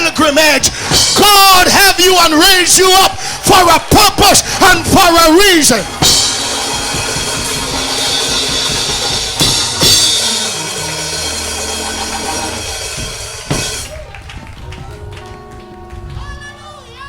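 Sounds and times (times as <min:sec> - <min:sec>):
drum kit with cymbal crashes: 0:00.6 - 0:01.8, 0:05.8 - 0:14.1.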